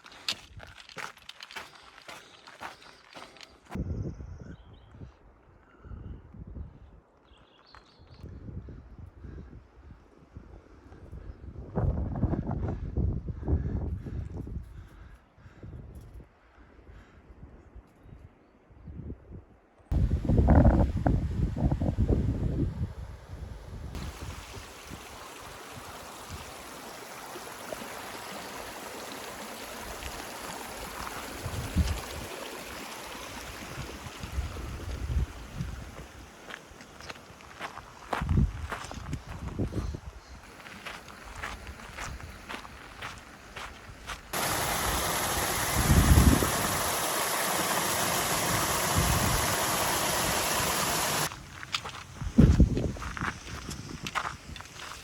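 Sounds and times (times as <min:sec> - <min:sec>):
creek running over rocks: 0:00.0 - 0:03.8, 0:24.0 - 0:39.7, 0:40.4 - 0:55.0
wind thumps on microphone: 0:19.9 - 0:23.0, 0:38.1 - 0:40.0, 0:44.4 - 0:46.9, 0:48.2 - 0:51.1, 0:52.1 - 0:54.8
rushing water hiss: 0:23.9 - 0:38.1, 0:40.5 - 0:52.6.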